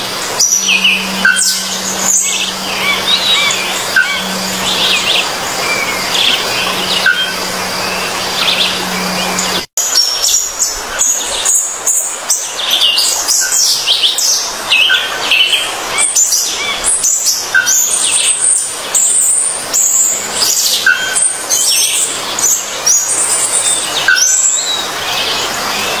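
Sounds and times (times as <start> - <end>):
steady low hum: 0.0 - 12.8
small birds chirping: 0.0 - 26.0.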